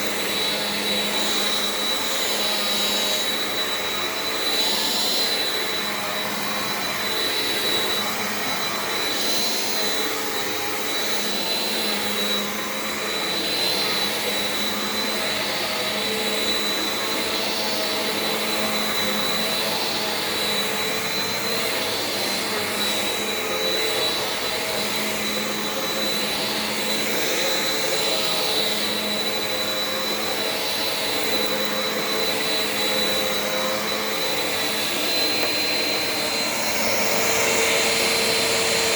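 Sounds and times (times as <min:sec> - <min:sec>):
vacuum cleaner motor whine: 0:00.0 - 0:38.9.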